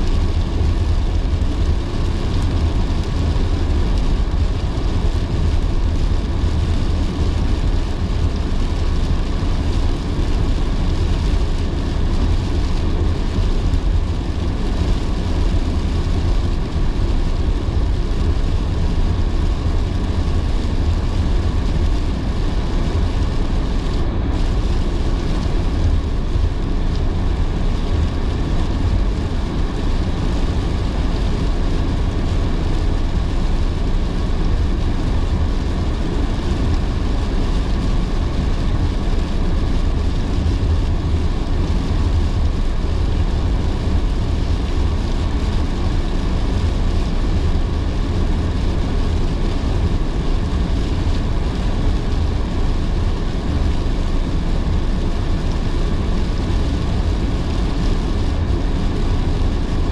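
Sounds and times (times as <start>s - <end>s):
car road rumble: 0.0s - 59.9s
rain: 0.0s - 59.9s
tyres hissing on wet road: 0.0s - 59.9s.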